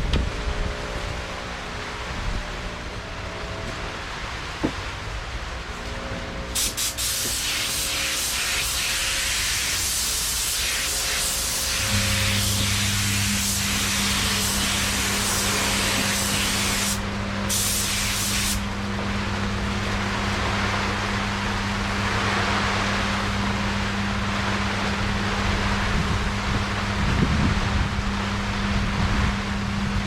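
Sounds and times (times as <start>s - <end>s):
machine hum: 0.0s - 30.0s
paint spray gun hissing: 6.5s - 18.8s.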